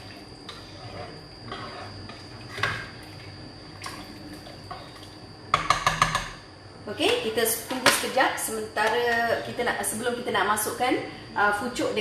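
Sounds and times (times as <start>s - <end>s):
utensil knocking on cooking pot: 5.5s - 6.4s.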